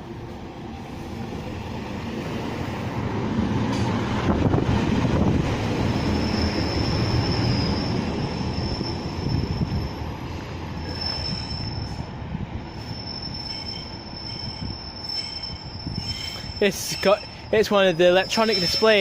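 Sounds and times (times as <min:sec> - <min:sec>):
diesel railbus rumbling: 0:00.0 - 0:19.0
high steady squeal: 0:05.9 - 0:10.0, 0:10.8 - 0:12.1, 0:12.7 - 0:19.0.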